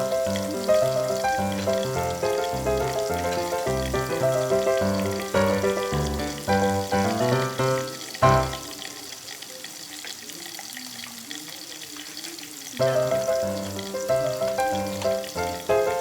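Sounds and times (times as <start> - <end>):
background music: 0.0 - 8.8, 12.8 - 16.0
meat sizzling on grill: 0.0 - 16.0.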